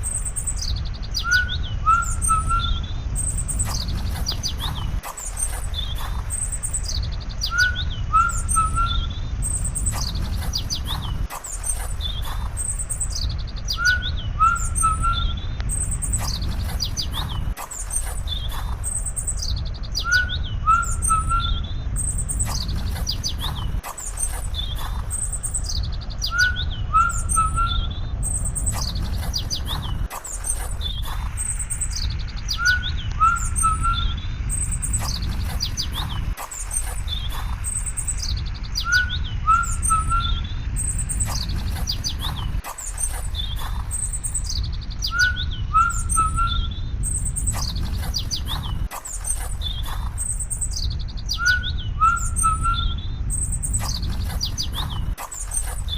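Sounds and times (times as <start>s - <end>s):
small birds chirping: 0.0s - 55.9s
steady low rumble: 0.0s - 55.9s.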